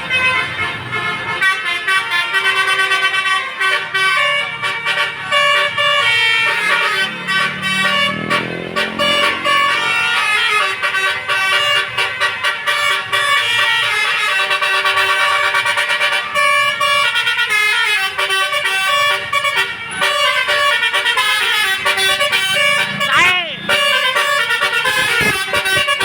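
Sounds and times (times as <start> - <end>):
bus air horn playing a tune: 0.0 - 26.0.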